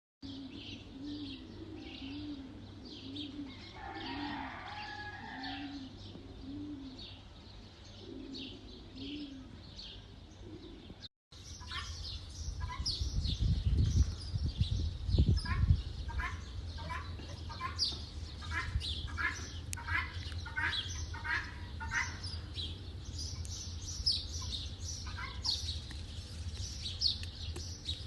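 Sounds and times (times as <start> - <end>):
dove cooing: 0.2 - 11.1
small birds chirping: 0.2 - 28.0.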